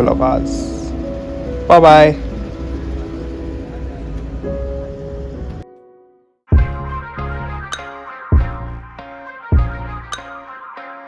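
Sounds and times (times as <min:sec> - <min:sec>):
deep bass hits: 0:00.0 - 0:05.6, 0:06.6 - 0:07.6
sustained chords: 0:00.0 - 0:05.6.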